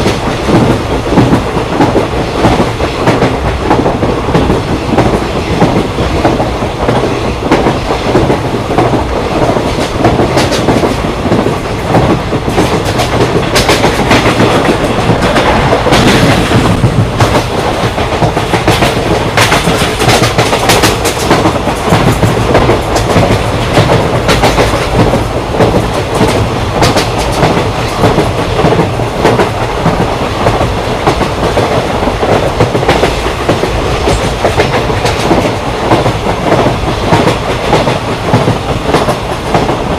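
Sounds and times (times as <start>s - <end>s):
train wheels rumbling: 0.0s - 39.9s.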